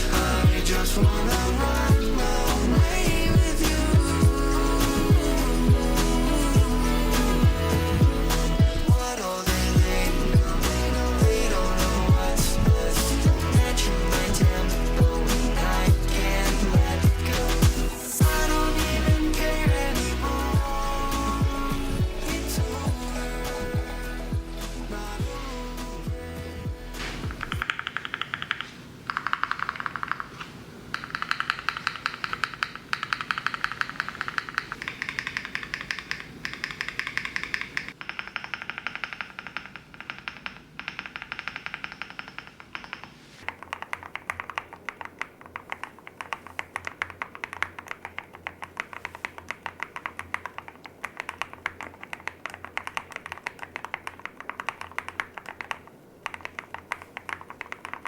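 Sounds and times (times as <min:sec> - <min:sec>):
mechanical keyboard typing: 0:27.3 - 0:58.0.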